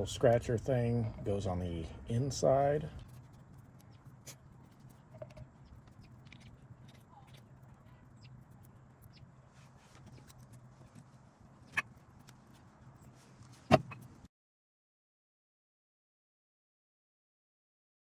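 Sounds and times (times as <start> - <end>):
faint steady hum: 0.0 - 14.3.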